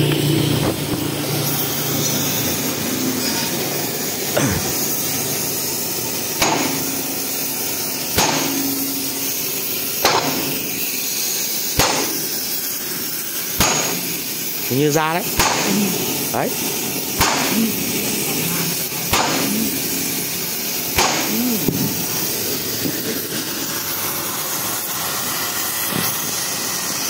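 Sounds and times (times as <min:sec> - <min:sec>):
steady background noise: 0:00.0 - 0:27.0
hammer striking steel: 0:06.3 - 0:07.3, 0:08.1 - 0:09.4, 0:10.0 - 0:11.0, 0:11.7 - 0:12.3, 0:13.6 - 0:14.2, 0:15.3 - 0:15.9, 0:17.1 - 0:17.9, 0:18.9 - 0:20.2, 0:20.9 - 0:22.0.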